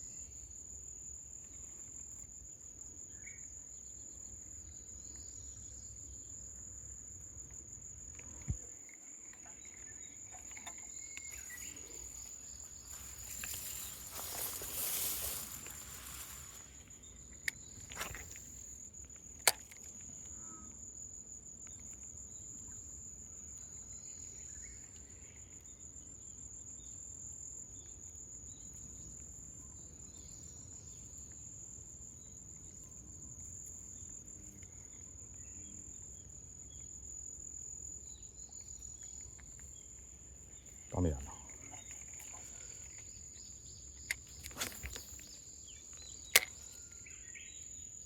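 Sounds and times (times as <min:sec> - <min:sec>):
high-pitched insect trilling: 0:00.0 - 0:27.9, 0:32.0 - 0:48.0
sharp clicks: 0:19.4 - 0:20.0, 0:45.9 - 0:46.8.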